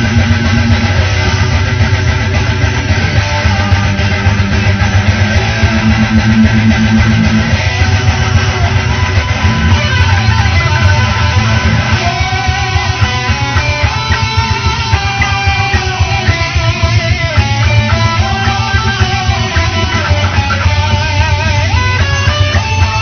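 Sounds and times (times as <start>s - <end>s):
guitar band music: 0.0s - 23.0s
lead guitar with bending notes: 0.0s - 23.0s.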